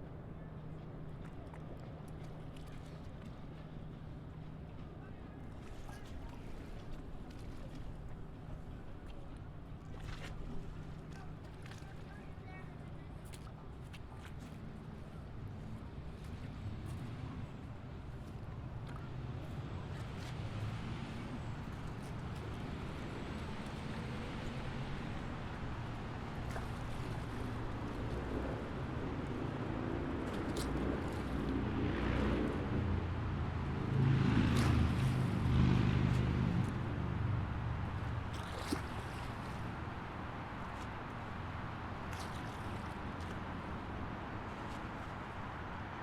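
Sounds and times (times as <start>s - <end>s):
low engine drone: 15.1s - 42.0s
road and tyre noise: 15.3s - 46.0s
vehicle passing close: 29.4s - 39.0s.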